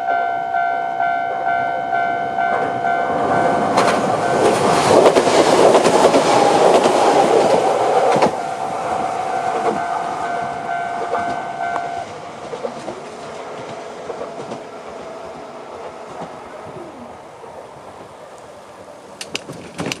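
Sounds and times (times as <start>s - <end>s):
crossing warning bell ringing: 0.0s - 17.4s
train wheels clattering: 2.4s - 16.6s.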